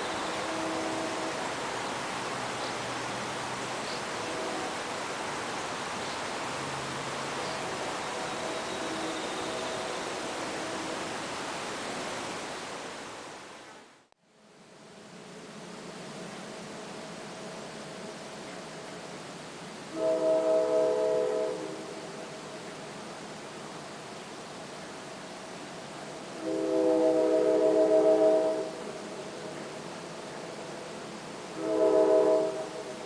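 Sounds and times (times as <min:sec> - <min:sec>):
distant locomotive air horn: 0:00.0 - 0:01.6, 0:04.2 - 0:05.2, 0:07.5 - 0:11.2, 0:19.9 - 0:22.0, 0:26.4 - 0:28.9, 0:31.6 - 0:33.0
steady outdoor hiss: 0:00.0 - 0:33.0.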